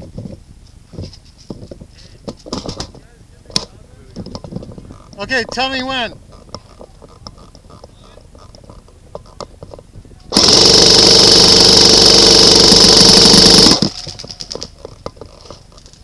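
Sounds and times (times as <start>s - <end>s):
airsoft rifle full-auto burst: 10.3s - 14.0s.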